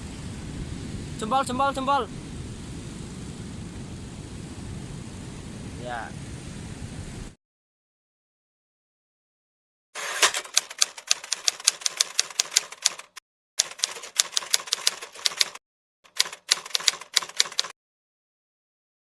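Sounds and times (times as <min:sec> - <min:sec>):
rapid typewriter keystroke clacks: 0:10.0 - 0:17.7.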